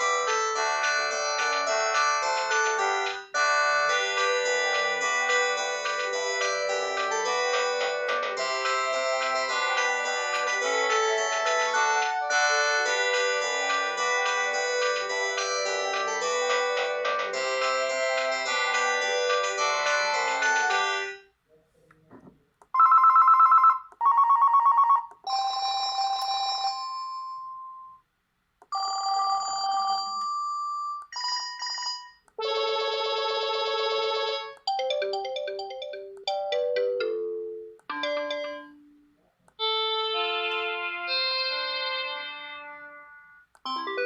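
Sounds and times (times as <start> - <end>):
cordless phone ringtones: 22.8 - 28.0, 28.7 - 38.9.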